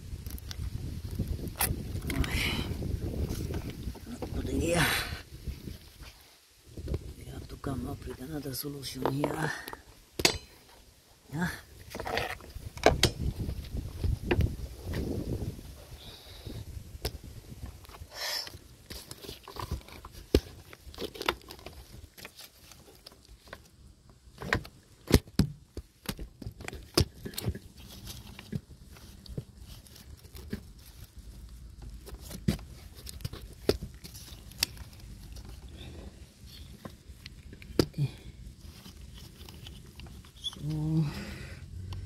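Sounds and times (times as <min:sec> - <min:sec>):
small parts being handled: 0:25.8 - 0:40.8.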